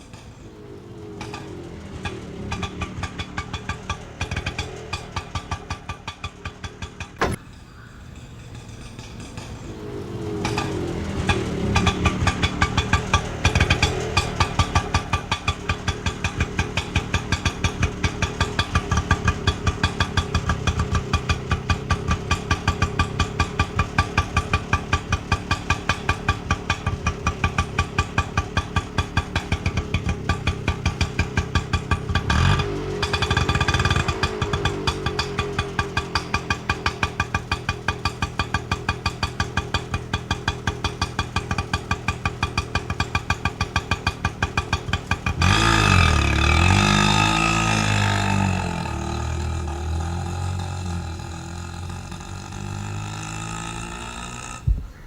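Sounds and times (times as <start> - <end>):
auto rickshaw engine running: 0.0 - 55.0.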